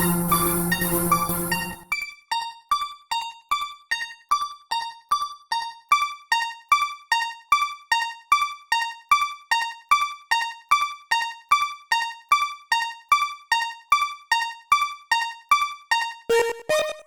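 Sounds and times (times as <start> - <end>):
railroad crossing bell alarm: 0.0 - 1.9.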